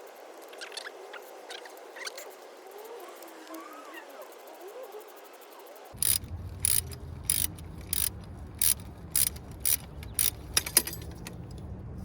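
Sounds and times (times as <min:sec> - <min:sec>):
ratchet wrench clicking: 0:05.9 - 0:11.4.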